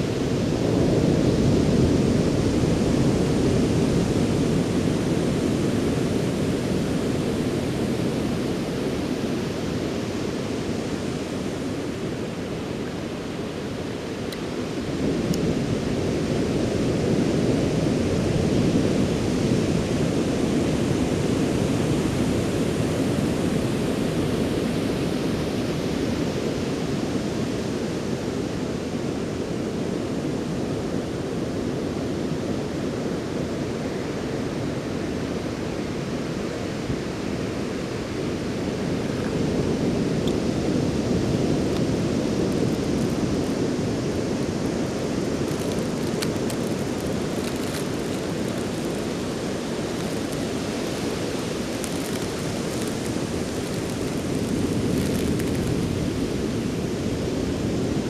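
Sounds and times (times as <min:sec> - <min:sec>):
ocean surf on beach: 0:00.0 - 0:58.0.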